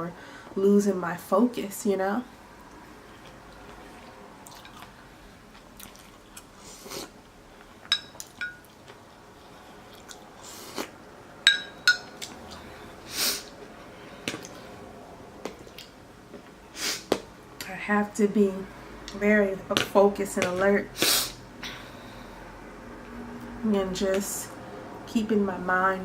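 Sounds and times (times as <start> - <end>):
chewing: 2.7 - 7.1, 9.8 - 11.0, 15.4 - 16.0
breathy sniffs: 13.1 - 13.5, 21.0 - 22.4.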